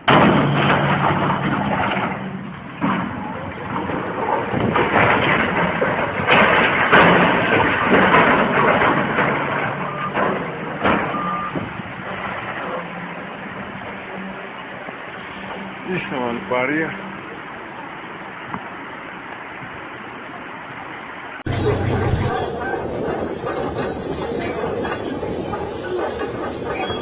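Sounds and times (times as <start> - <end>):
heavy vehicle engine running: 21.5 - 27.0
rattling and scraping: 21.5 - 27.0.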